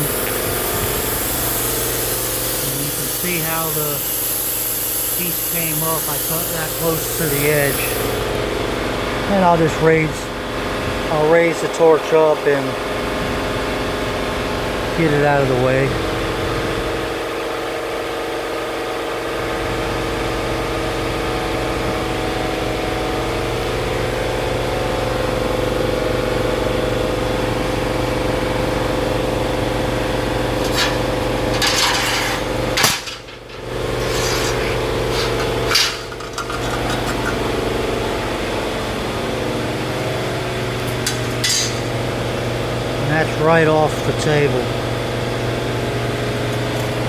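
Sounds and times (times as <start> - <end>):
machine hum: 0.0 - 18.0, 19.3 - 47.0
steel plate scraping: 30.6 - 37.5
steel plate clanking: 30.6 - 37.6, 41.0 - 42.0.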